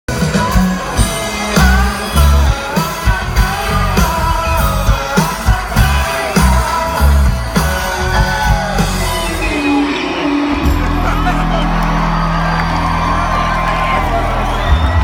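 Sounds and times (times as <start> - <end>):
person singing: 0.1 - 11.8
heavy bass drum beat: 0.1 - 15.0
live rock band playing: 0.1 - 15.0.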